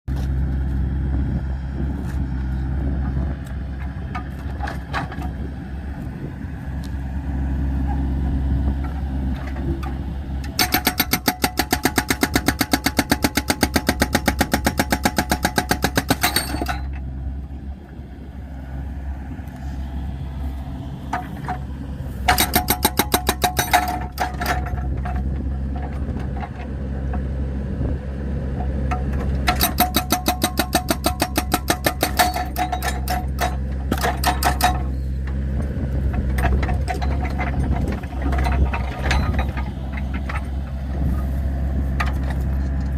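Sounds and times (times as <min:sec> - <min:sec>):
diesel engine running: 0:00.1 - 0:42.9
hydraulic breaker hammering logs: 0:09.6 - 0:17.0, 0:21.1 - 0:27.2, 0:28.6 - 0:41.2.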